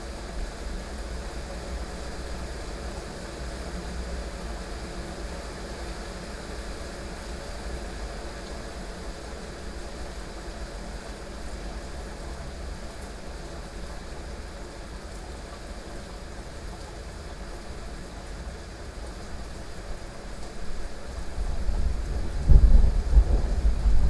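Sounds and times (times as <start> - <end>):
heavy rain falling: 11.6 - 24.0.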